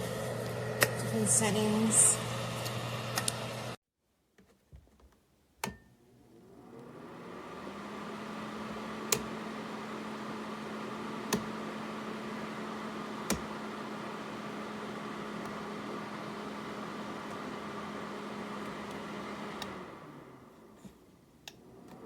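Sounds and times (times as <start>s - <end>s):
heater fan whoosh with hum: 0.0s - 3.8s
heater switch click: 2.6s - 3.4s, 9.0s - 9.4s, 11.2s - 11.6s, 13.2s - 13.6s, 18.6s - 19.8s.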